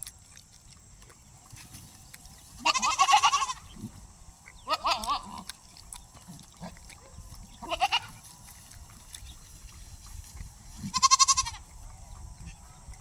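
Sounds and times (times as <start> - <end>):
goat or sheep bleat: 2.6 - 3.7, 4.6 - 5.5, 7.6 - 8.2, 10.8 - 11.7.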